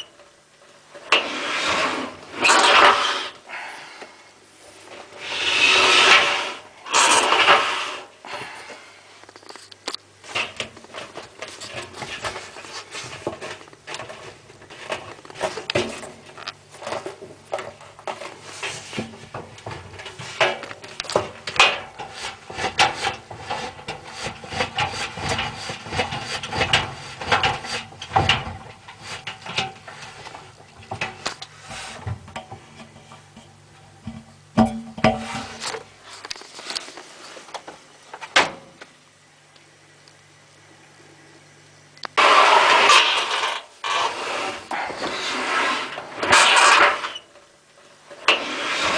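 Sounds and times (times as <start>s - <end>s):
dryer motor hum: 0.0s - 48.9s
dryer drum knocking and rubbing: 10.2s - 35.9s.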